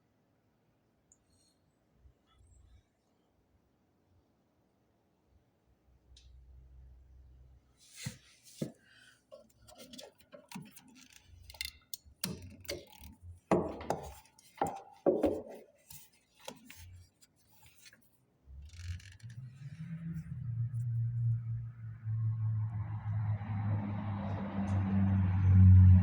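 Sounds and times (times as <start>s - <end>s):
hard objects clicking and knocking: 9.4s - 16.9s.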